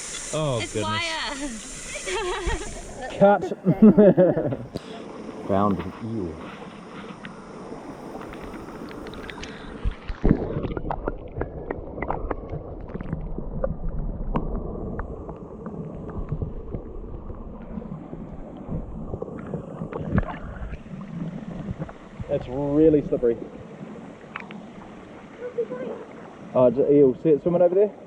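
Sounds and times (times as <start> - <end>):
water sloshing and gurgling: 3.9 - 28.0.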